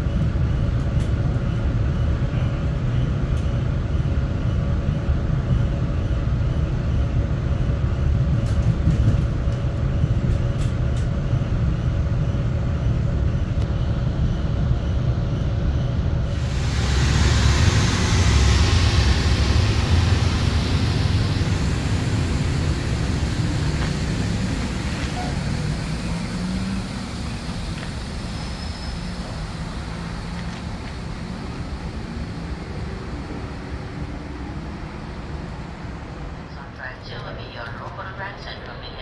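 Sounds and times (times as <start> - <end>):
train rumbling past: 0.0 - 39.0.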